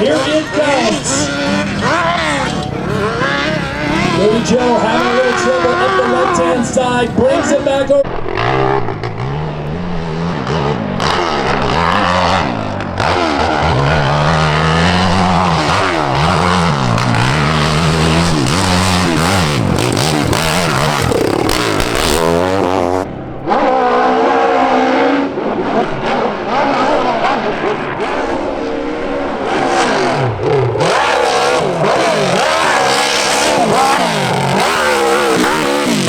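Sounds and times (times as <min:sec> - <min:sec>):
steady engine note: 0:00.0 - 0:25.6
motorcycle engine revving: 0:00.0 - 0:36.0.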